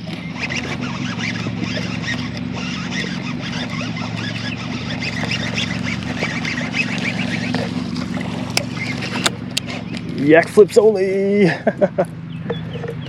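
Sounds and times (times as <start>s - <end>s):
steady low hum: 0.0s - 13.0s
chorus of duck-like calls: 0.1s - 7.8s.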